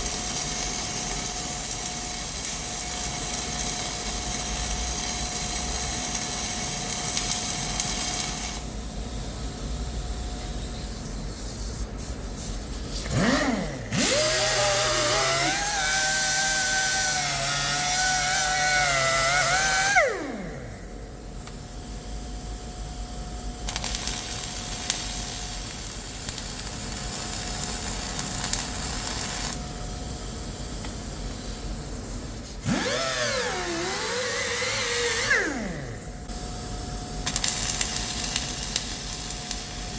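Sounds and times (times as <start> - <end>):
workshop hiss: 0.0 - 39.9
power tool motor whining: 13.0 - 20.9, 32.6 - 36.3.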